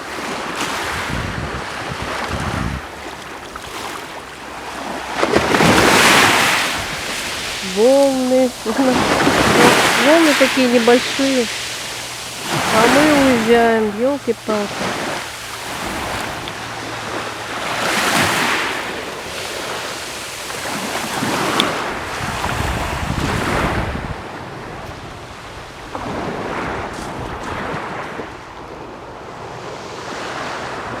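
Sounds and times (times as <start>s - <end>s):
small waves washing on shore: 0.0s - 31.0s
wind rumbling on microphone: 0.1s - 3.4s, 20.6s - 31.0s.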